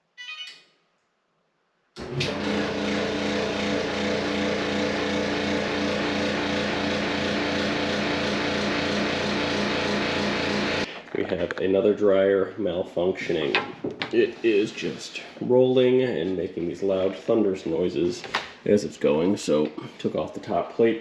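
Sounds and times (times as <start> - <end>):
clothes dryer rumbling hum: 2.0 - 11.0.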